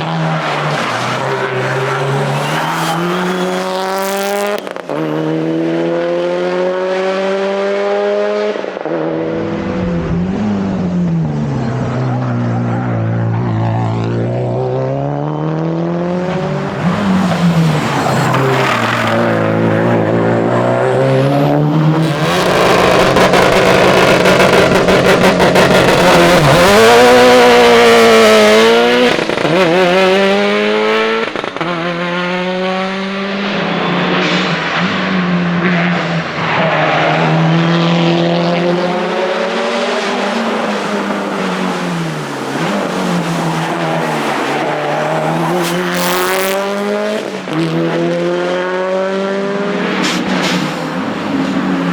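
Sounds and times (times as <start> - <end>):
rally car engine revving: 0.0 - 51.9
tyre and road noise: 0.0 - 51.9.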